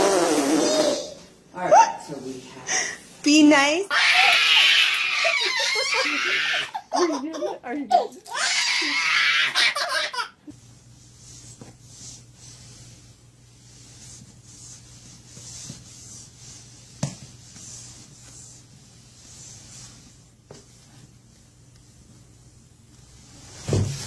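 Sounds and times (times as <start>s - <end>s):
soft rubbing or rustling: 10.5s - 24.0s.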